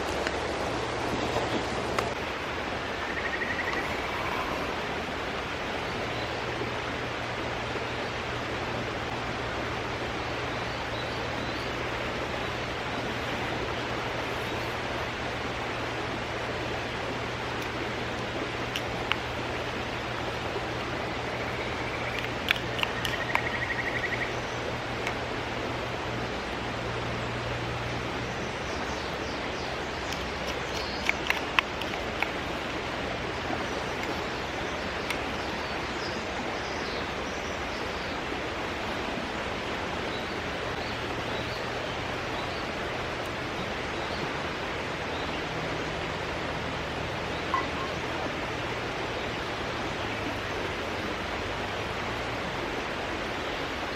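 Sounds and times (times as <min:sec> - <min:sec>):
mountain stream rushing: 0:00.0 - 0:53.9
faint high chirps: 0:47.5 - 0:48.0.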